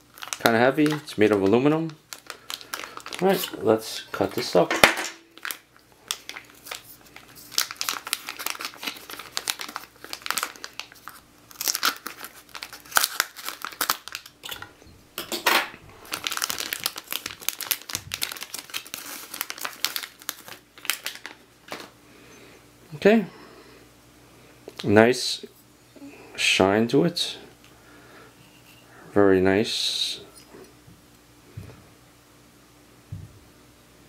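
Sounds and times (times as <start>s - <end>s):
plastic packaging crinkling and tearing: 0.0s - 4.7s, 5.3s - 14.7s, 15.9s - 21.9s.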